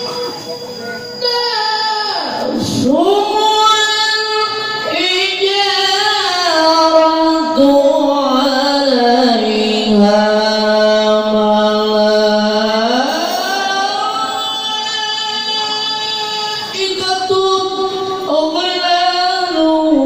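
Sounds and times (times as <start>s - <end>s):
man reciting in high voice: 0.0s - 20.0s.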